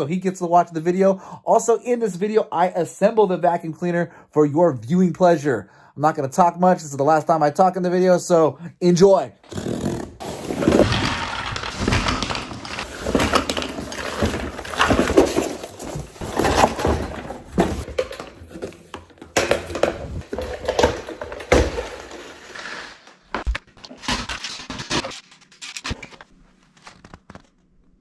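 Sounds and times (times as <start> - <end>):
parts knocking and scraping: 10.2 - 22.6.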